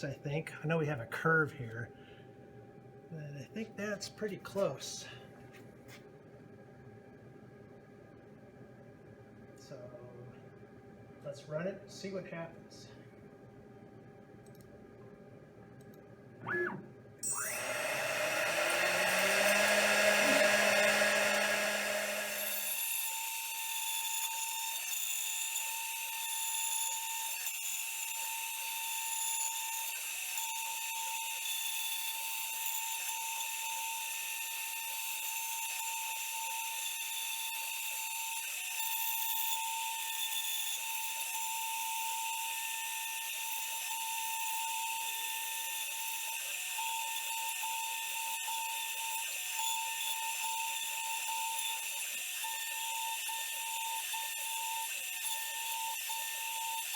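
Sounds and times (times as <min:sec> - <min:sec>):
router spindle whine: 0:17.2 - 0:28.3, 0:39.6 - 0:56.9.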